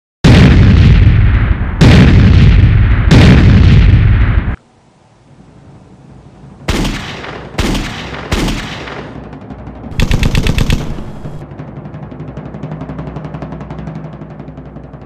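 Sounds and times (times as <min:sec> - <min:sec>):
gunshots: 0:00.2 - 0:04.4, 0:06.7 - 0:09.2, 0:09.9 - 0:11.4
machine-gun burst: 0:06.7 - 0:09.2, 0:09.9 - 0:11.4.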